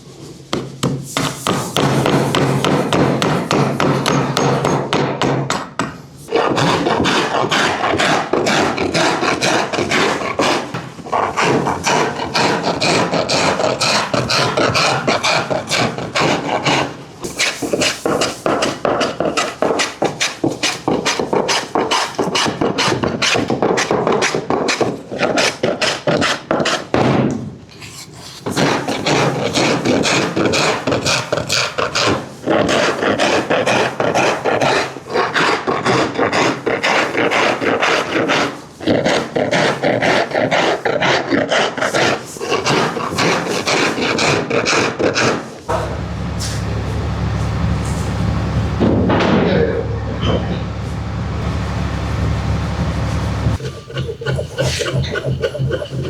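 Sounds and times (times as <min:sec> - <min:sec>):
rasping strokes on wooden bat: 0:00.2 - 0:04.9, 0:05.6 - 0:26.9
low machine hum: 0:45.7 - 0:53.6.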